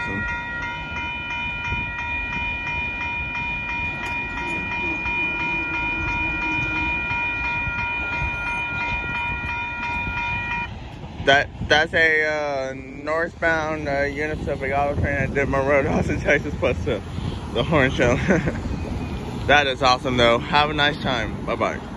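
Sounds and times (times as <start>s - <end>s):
freight train rumble: 0.0s - 21.9s
locomotive air horn: 3.8s - 10.7s.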